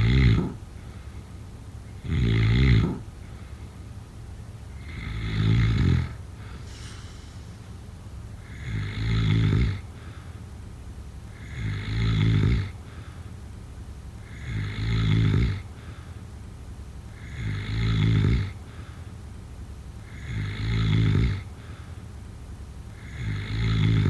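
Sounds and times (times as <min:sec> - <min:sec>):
person snoring: 0:00.0 - 0:00.6, 0:02.0 - 0:03.1, 0:04.8 - 0:06.8, 0:08.5 - 0:09.8, 0:17.2 - 0:18.6, 0:20.1 - 0:21.4, 0:23.0 - 0:24.0
quiet breathing: 0:00.0 - 0:04.1, 0:04.7 - 0:13.6, 0:14.2 - 0:16.5, 0:17.1 - 0:22.3.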